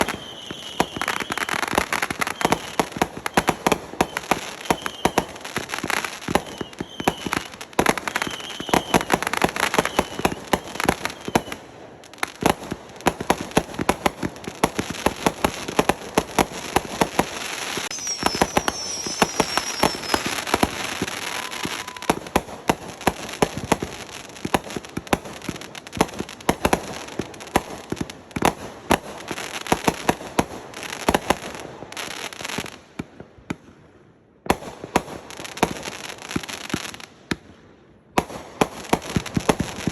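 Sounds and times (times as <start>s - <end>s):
firework whistles: 0.0s - 5.4s, 6.3s - 11.7s, 16.5s - 22.5s
fireworks crackling and banging: 0.0s - 37.6s, 38.2s - 39.9s.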